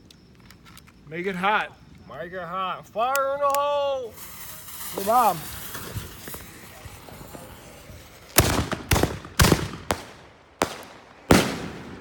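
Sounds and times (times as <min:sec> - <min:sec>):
firework shells bursting: 0:03.1 - 0:12.0
lit fuse hissing: 0:03.2 - 0:09.2.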